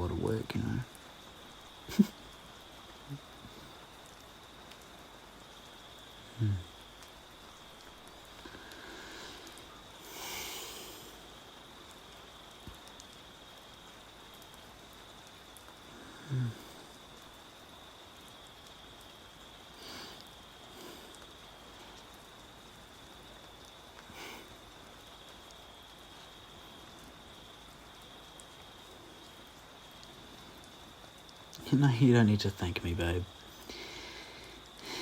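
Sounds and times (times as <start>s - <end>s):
faint high whine: 0.0s - 35.0s
microphone hiss: 0.0s - 35.0s.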